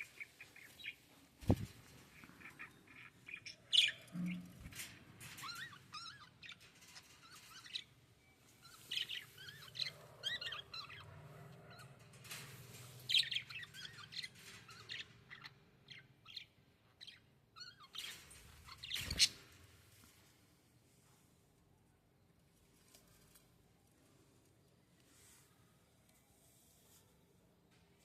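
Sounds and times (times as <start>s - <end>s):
small birds chirping: 0.0s - 12.4s, 13.0s - 20.2s.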